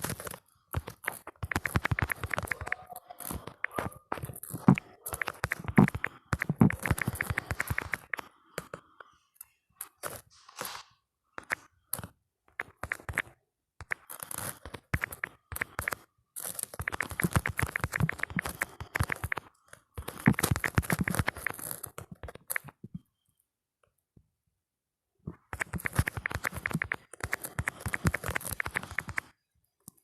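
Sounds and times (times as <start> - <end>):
phone keyboard typing clicks: 0.8 - 8.7, 11.4 - 16.0, 16.7 - 22.9, 25.5 - 29.3.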